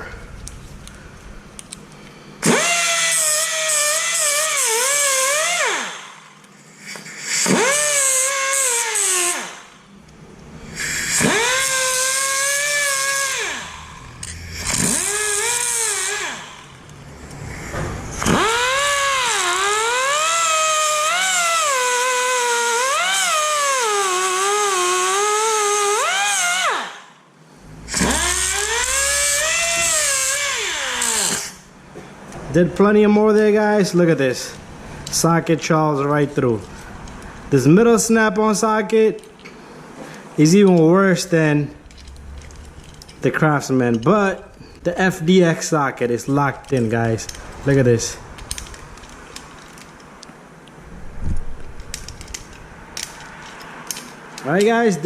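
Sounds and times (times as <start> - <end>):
power tool whining: 2.4 - 9.8, 10.6 - 31.8.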